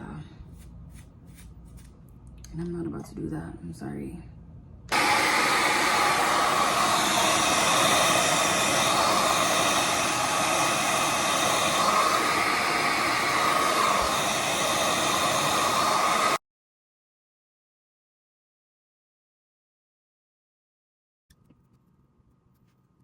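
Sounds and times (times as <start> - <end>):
hair dryer blowing: 4.9 - 16.4.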